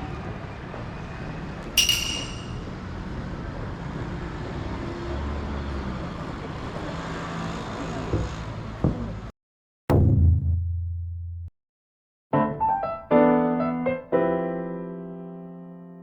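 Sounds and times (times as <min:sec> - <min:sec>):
traffic rumble: 0:00.0 - 0:09.3.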